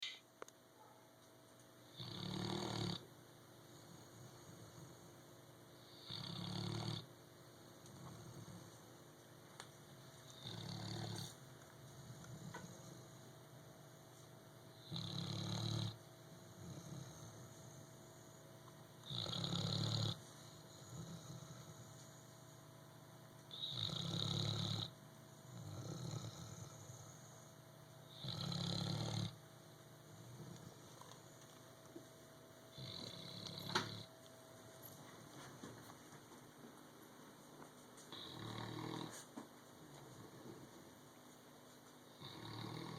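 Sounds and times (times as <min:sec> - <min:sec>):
pet snoring: 0:01.8 - 0:03.1, 0:05.8 - 0:07.1, 0:07.9 - 0:08.9, 0:10.2 - 0:13.3, 0:14.8 - 0:18.4, 0:19.0 - 0:22.4, 0:23.5 - 0:29.4, 0:32.7 - 0:34.1, 0:38.1 - 0:39.3, 0:42.1 - 0:42.9.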